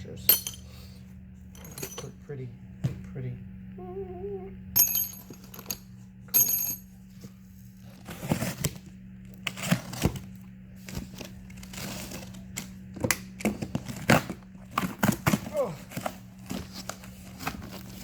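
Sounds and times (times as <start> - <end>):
steady low hum: 0.0 - 18.0
metal bolts clinking: 0.2 - 0.8, 1.6 - 2.2, 4.8 - 6.9.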